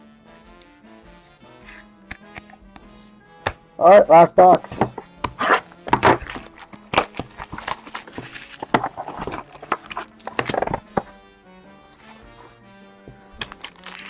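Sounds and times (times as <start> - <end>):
faint background music: 0.0 - 14.0
cardboard box clicks and scrapes: 4.7 - 11.2, 13.1 - 14.0
wrapping rustling: 4.7 - 11.2, 11.9 - 14.0.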